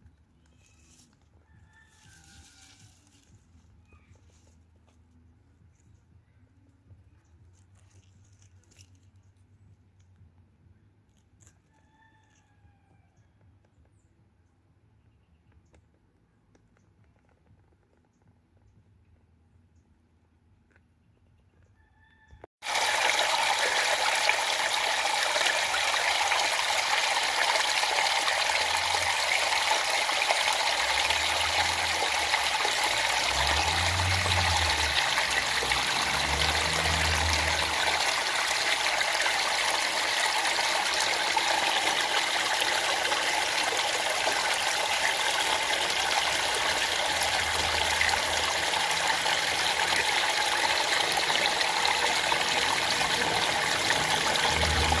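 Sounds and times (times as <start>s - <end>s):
rushing water hiss: 22.6s - 55.0s.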